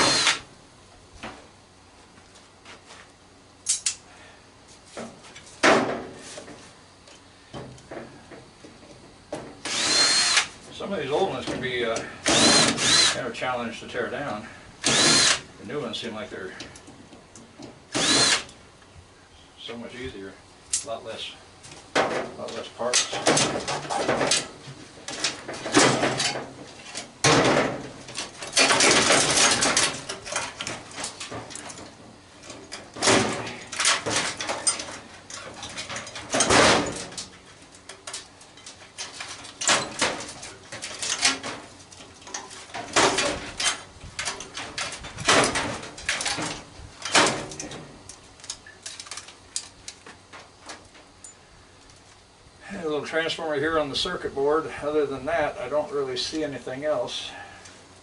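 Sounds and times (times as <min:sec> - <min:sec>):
sheet metal clattering and scraping: 0:23.0 - 0:47.9.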